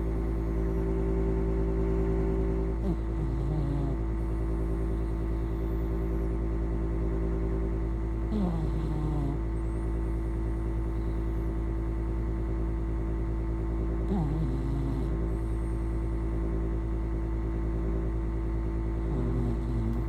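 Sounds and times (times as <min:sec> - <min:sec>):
steady low hum: 0:00.0 - 0:20.0
pet snoring: 0:02.7 - 0:06.4, 0:08.2 - 0:10.2, 0:13.9 - 0:16.9, 0:18.9 - 0:20.0.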